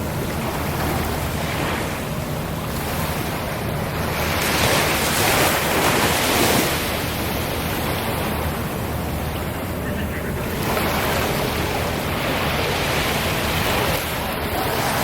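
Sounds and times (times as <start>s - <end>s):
sea surf washing ashore: 0.0s - 15.0s.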